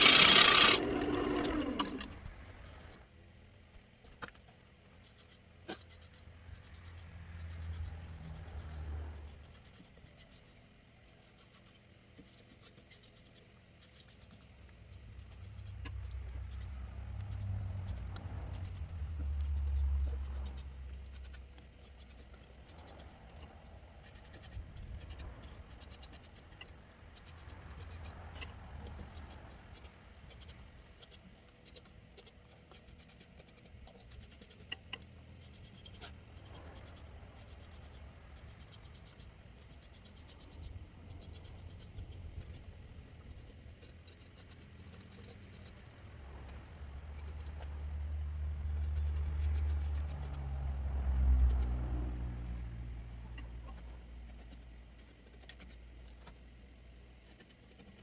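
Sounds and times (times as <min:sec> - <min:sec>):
scratching and rubbing on wood: 0:04.2 - 0:58.0
low hum: 0:14.6 - 0:31.4
small ticks: 0:48.6 - 0:56.4.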